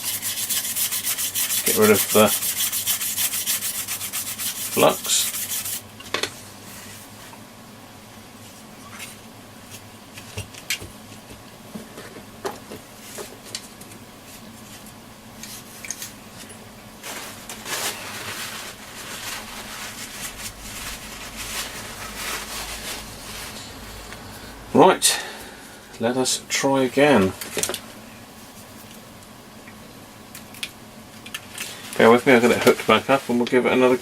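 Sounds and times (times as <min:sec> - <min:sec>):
toothbrush scrubbing circuit board: 0:00.0 - 0:05.8.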